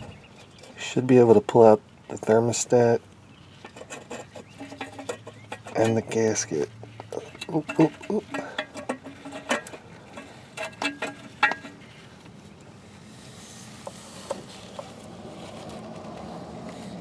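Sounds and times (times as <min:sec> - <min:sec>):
metal parts clinking: 0:03.6 - 0:11.8.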